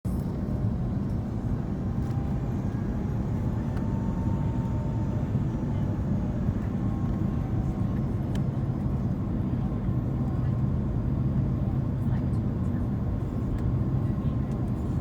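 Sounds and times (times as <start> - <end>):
airliner cabin engine rumble: 0.1 - 15.0.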